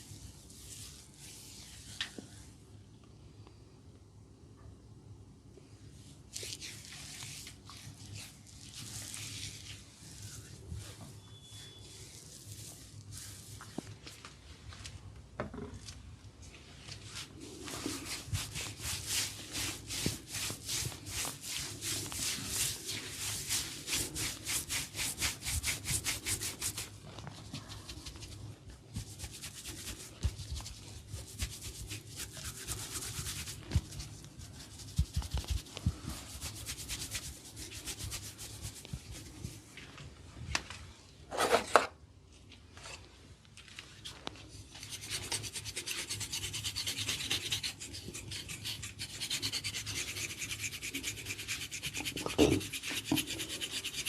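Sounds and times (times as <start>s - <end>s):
hands rubbing and scratching hair: 0.0s - 2.5s, 6.3s - 15.0s, 16.4s - 40.8s.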